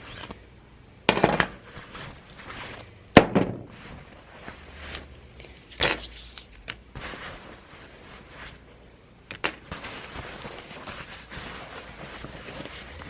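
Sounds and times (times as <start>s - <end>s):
rustling of clothes: 9.6s - 13.0s.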